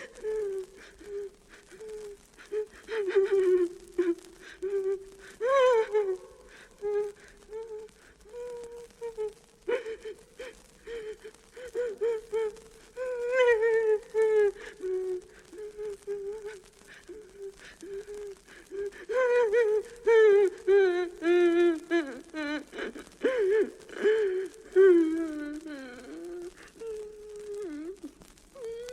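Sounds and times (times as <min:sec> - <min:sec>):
person whimpering and moaning: 0:00.0 - 0:28.9.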